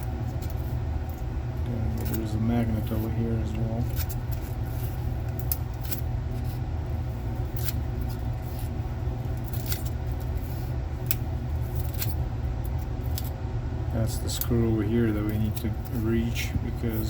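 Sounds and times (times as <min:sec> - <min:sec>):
steady low hum: 0:00.0 - 0:17.0
tool clicking and scraping laptop: 0:03.8 - 0:06.6.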